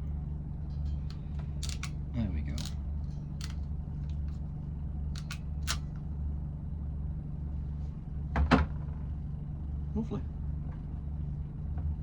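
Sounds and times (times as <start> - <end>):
steady low hum: 0.0 - 12.0
crimping tool clicks: 1.1 - 2.0, 2.6 - 2.8, 3.4 - 3.6, 5.2 - 5.9.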